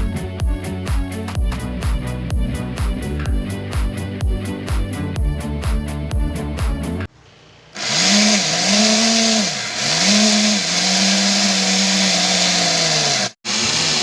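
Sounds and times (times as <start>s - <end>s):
small motor whining: 7.7s - 14.0s.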